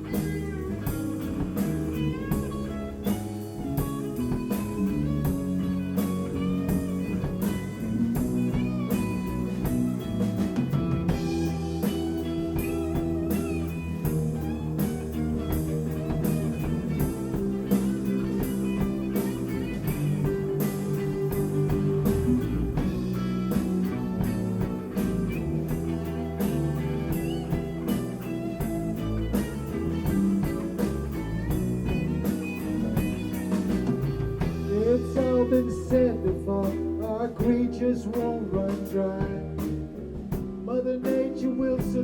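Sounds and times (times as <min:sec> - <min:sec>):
electric guitar: 0:00.0 - 0:42.0
steady drum beat: 0:00.0 - 0:42.0.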